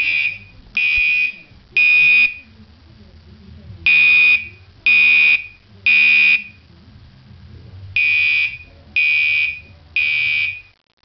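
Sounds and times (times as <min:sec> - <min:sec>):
fire alarm horn blasts: 0:03.9 - 0:06.6, 0:08.0 - 0:10.7.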